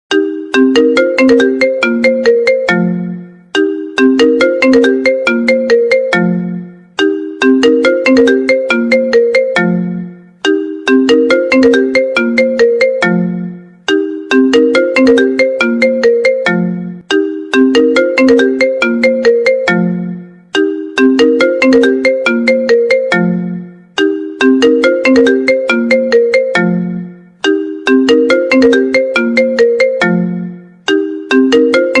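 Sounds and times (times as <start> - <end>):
phone ringtone melody: 0.1 - 32.0.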